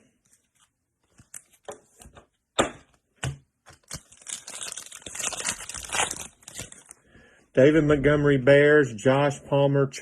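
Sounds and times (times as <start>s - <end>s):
wrapper tearing and crinkling: 3.7s - 7.0s.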